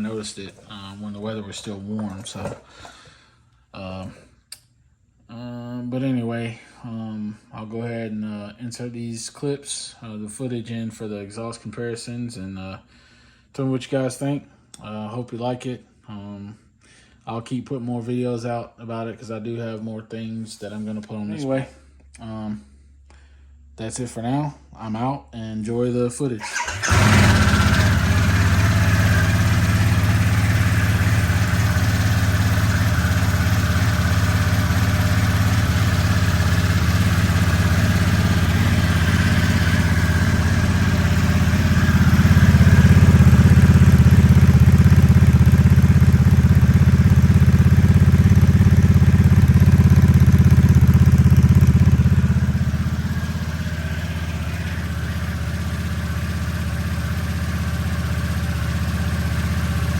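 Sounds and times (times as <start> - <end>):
motorcycle engine idling and revving: 26.5 - 59.9.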